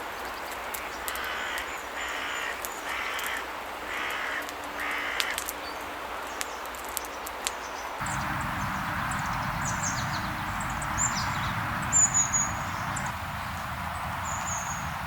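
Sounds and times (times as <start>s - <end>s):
crow cawing: 1.1s - 5.4s.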